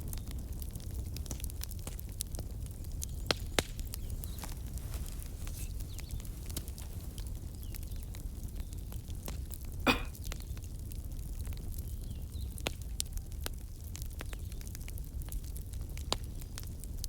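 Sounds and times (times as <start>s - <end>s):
campfire crackling and popping: 0.0s - 17.0s
low fire rumble: 0.0s - 17.0s.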